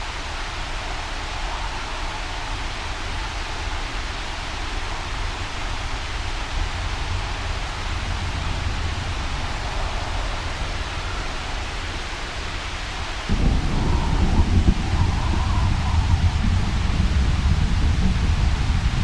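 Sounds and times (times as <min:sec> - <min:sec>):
rain: 0:00.0 - 0:19.0
wind: 0:00.0 - 0:19.0
deep rumble: 0:04.7 - 0:19.0.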